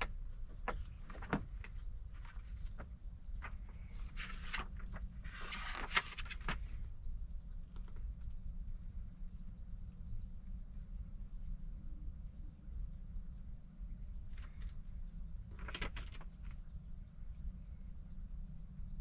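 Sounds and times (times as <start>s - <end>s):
brief rustle: 15.5s - 16.6s.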